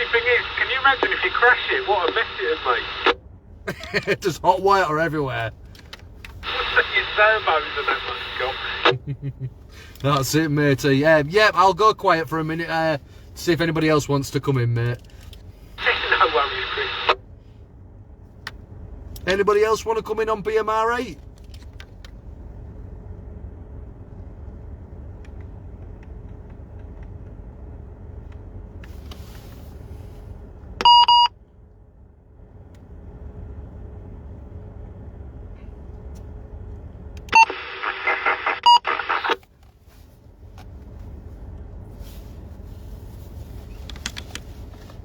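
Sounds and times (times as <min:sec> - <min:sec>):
steady low rumble: 0:00.0 - 0:45.0
two-way radio beeps: 0:15.8 - 0:17.2, 0:30.8 - 0:31.3, 0:37.4 - 0:39.4.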